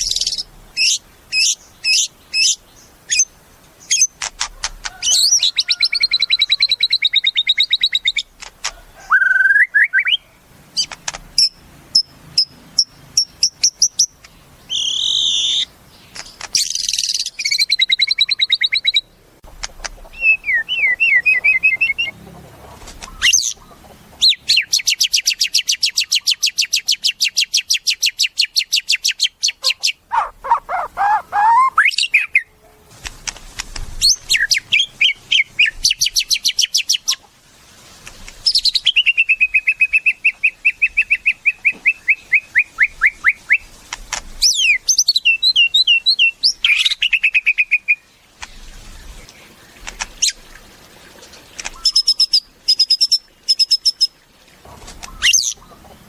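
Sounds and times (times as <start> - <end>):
bird singing whistles: 9.1 - 10.2, 14.7 - 15.7, 20.1 - 22.1, 38.5 - 43.7, 44.4 - 48.0
fast bird trill: 29.6 - 32.5.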